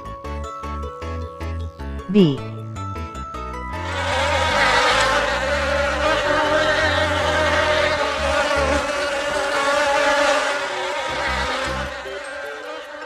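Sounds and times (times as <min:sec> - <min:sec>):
bee buzzing: 0:03.7 - 0:13.0.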